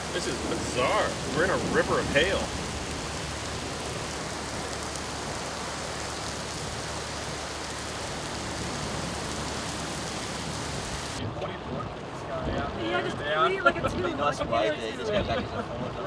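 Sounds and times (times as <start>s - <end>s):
floodwater rushing: 0.0s - 11.2s
rain and hail hissing: 0.0s - 11.2s.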